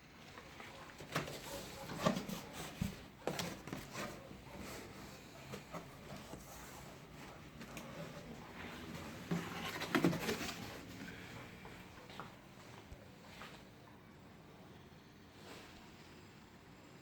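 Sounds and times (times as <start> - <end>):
packaging knocks and rustles: 7.5 - 11.2.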